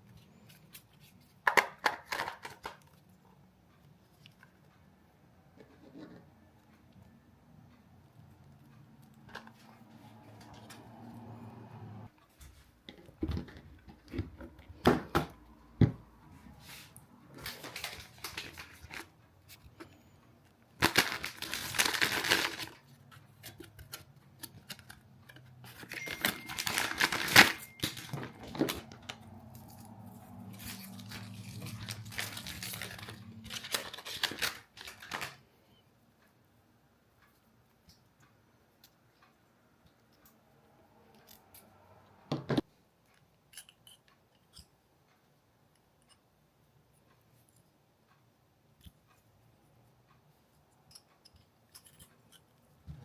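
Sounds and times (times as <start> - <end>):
rustling or scraping: 16.2 - 20.2, 20.8 - 35.4.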